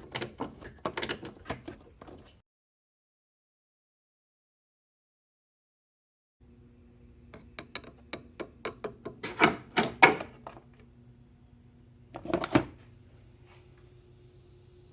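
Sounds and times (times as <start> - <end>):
faint hum: 6.4 - 14.9
sharp clicks and knocks: 7.3 - 10.6.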